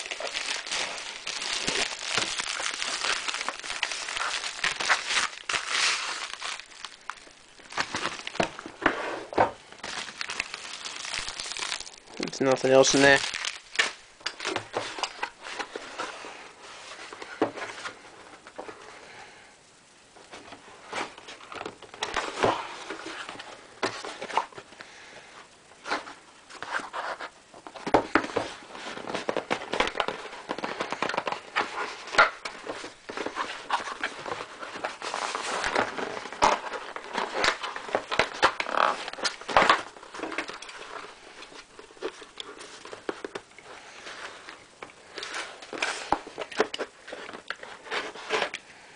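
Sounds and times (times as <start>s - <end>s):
packing material crinkling: 0.0s - 8.9s, 9.5s - 18.1s, 25.8s - 48.9s.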